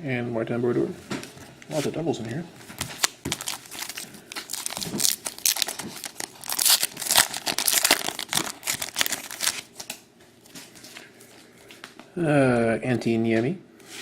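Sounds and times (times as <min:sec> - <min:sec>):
plastic wrapper crinkling and tearing: 0:02.8 - 0:10.0.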